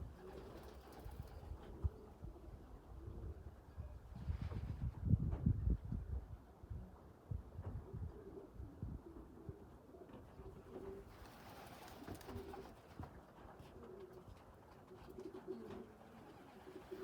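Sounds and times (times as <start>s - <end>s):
pigeons cooing: 0.0s - 3.5s, 8.0s - 12.9s, 13.6s - 17.0s.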